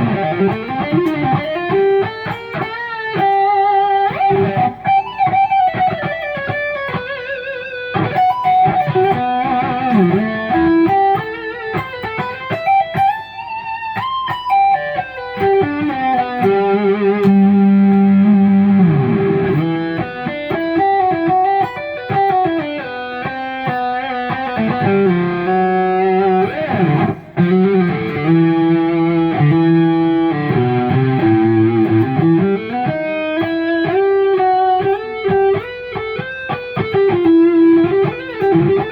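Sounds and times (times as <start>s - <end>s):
distorted electric guitar lead: 0.0s - 38.9s.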